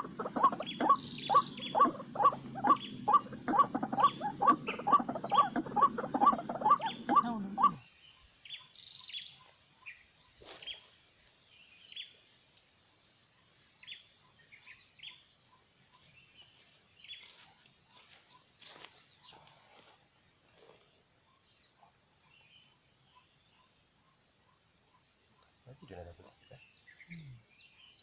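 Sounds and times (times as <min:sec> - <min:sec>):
low hum: 0:00.0 - 0:07.6
waterhen harsh calls: 0:00.0 - 0:07.8
faint bird chirps: 0:00.0 - 0:28.0
high insect hiss: 0:00.0 - 0:28.0.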